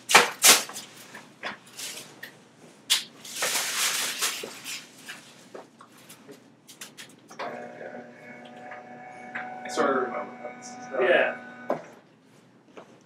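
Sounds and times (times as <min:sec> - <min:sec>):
rustling: 0:03.2 - 0:07.0.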